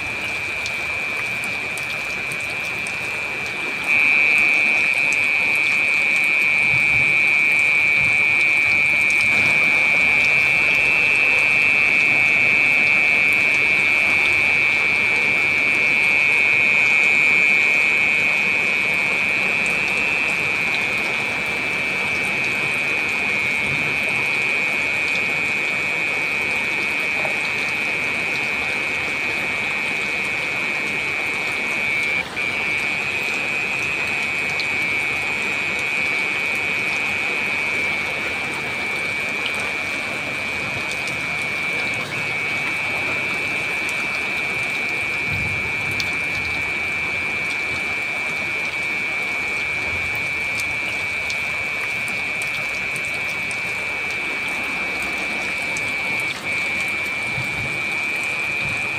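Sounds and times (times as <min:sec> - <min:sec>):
heavy rain falling: 0:00.0 - 0:58.9
high-pitched whine: 0:00.0 - 0:58.9.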